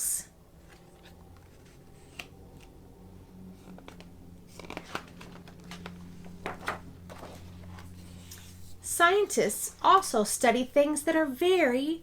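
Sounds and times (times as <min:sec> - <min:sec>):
low steady hum: 0:00.0 - 0:12.0
paper rustling and crinkling: 0:03.6 - 0:08.7.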